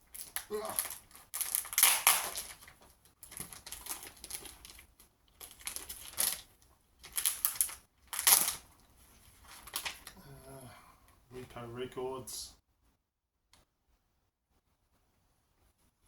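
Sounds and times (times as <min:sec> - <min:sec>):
packaging crinkling: 0:00.0 - 0:10.2.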